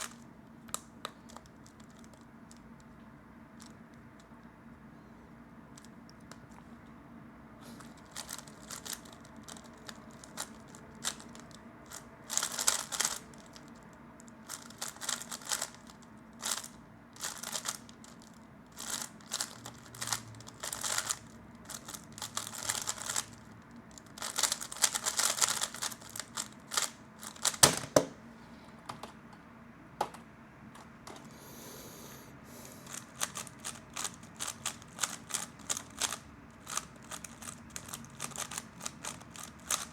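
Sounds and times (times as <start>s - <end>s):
puzzle cube plastic clicking: 7.9s - 13.7s, 14.5s - 23.4s, 24.0s - 28.1s, 32.8s - 39.9s.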